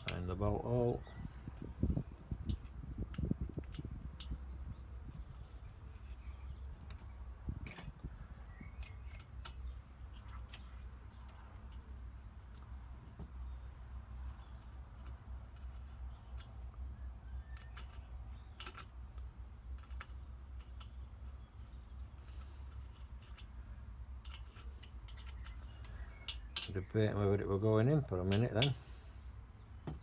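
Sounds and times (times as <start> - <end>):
small clicks and taps of parts: 2.4 - 6.2, 8.6 - 13.5, 14.2 - 26.8, 28.2 - 28.8.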